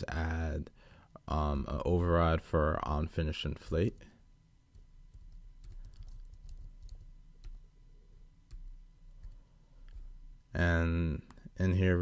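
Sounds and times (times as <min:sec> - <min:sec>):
low background hum: 0:00.0 - 0:12.0
typing on computer keyboard: 0:04.7 - 0:07.6, 0:08.5 - 0:10.1.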